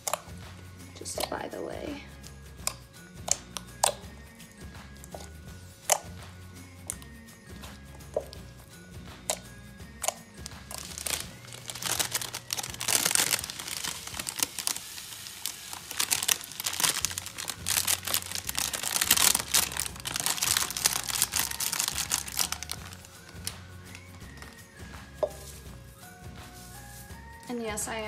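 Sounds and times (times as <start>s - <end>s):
quiet background music: 0.0s - 28.0s
slime squished by hand crackling: 10.0s - 24.4s.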